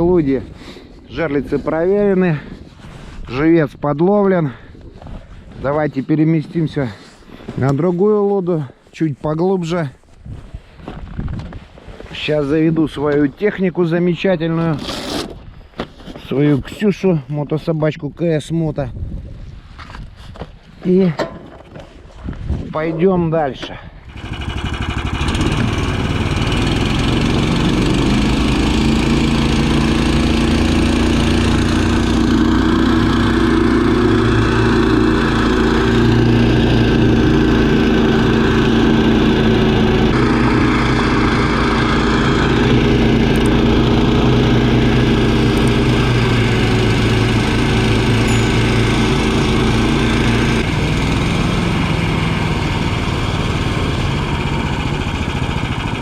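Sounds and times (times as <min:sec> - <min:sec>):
small engine running: 0:14.7 - 0:15.4, 0:24.0 - 0:56.0.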